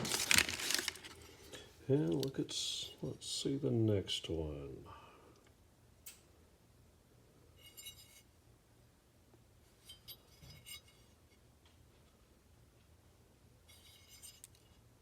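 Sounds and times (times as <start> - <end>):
low steady hum: 0.0 - 15.0
rifle parts clinking and rattling: 13.7 - 14.8.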